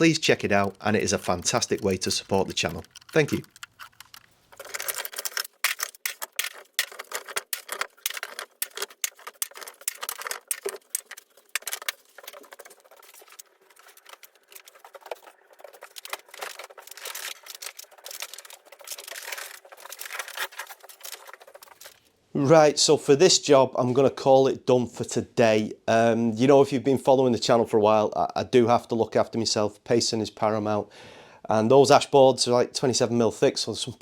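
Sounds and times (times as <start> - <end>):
clatter of clicks and knocks: 0.4 - 22.0.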